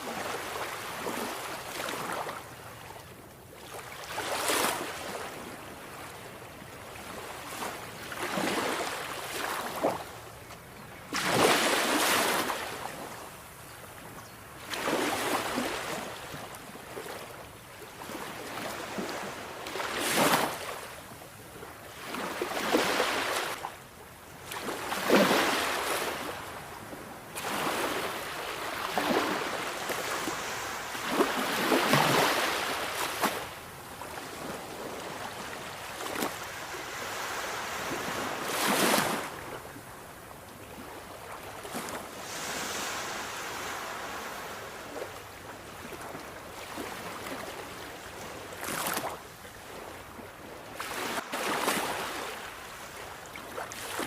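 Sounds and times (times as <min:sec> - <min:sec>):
sea waves breaking on shore: 0:00.0 - 0:03.0, 0:03.6 - 0:10.2, 0:11.1 - 0:13.6, 0:14.6 - 0:23.8, 0:24.4 - 0:54.0.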